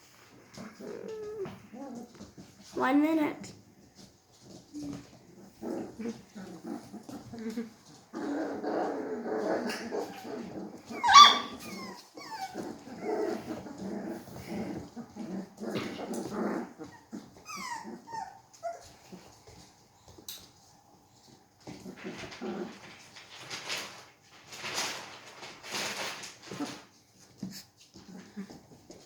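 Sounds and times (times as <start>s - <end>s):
puppies play-growling: 0.1s - 2.8s, 3.4s - 29.0s
puppy whining: 0.5s - 2.4s, 4.4s - 19.6s
puppy yelp: 10.9s - 12.6s, 16.9s - 18.9s.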